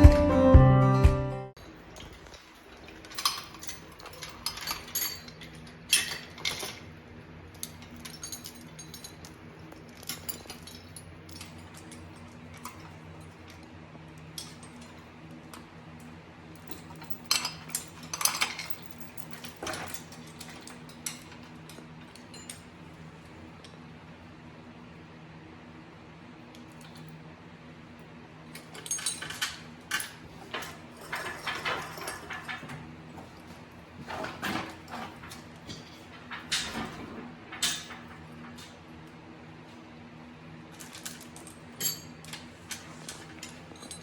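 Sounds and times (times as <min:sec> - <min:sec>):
metal tools clinking: 0:01.6 - 0:07.0, 0:07.6 - 0:13.6, 0:16.6 - 0:22.7, 0:28.6 - 0:33.5, 0:34.1 - 0:38.7, 0:40.8 - 0:44.0.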